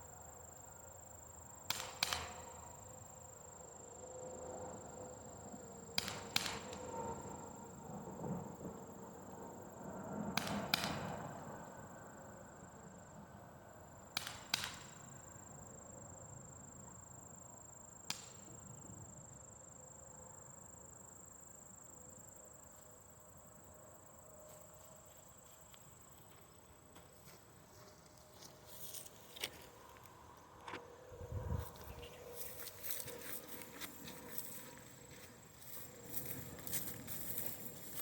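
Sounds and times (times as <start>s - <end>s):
bb pistol shots: 6.0s - 6.7s.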